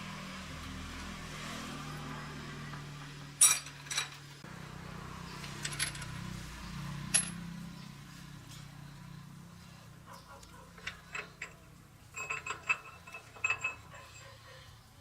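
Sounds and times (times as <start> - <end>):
small metal parts clinking: 3.4 - 4.3, 5.4 - 6.2, 7.1 - 7.4, 10.8 - 14.3.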